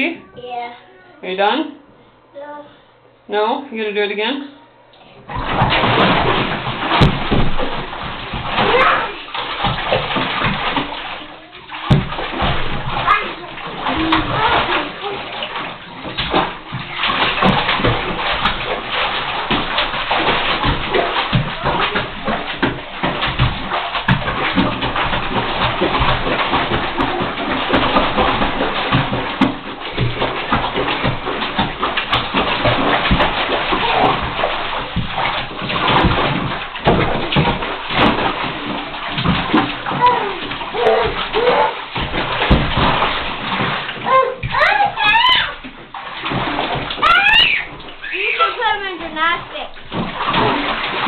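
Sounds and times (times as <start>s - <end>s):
child's voice: 0.2s - 1.2s, 2.3s - 2.8s, 8.7s - 9.2s, 11.2s - 11.7s, 13.0s - 15.3s, 40.0s - 41.8s, 44.0s - 45.6s, 47.0s - 49.8s
water splashing in a bathtub: 4.9s - 51.0s.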